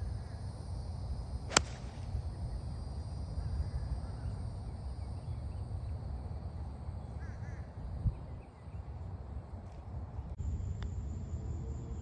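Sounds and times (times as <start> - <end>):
golf club striking ball: 1.5 - 2.0
wind rumble on microphone: 7.5 - 12.0.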